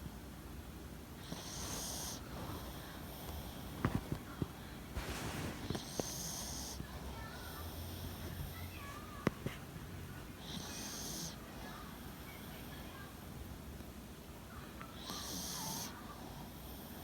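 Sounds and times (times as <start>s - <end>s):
dog snoring softly: 1.2s - 9.6s, 10.4s - 13.2s, 14.8s - 17.0s.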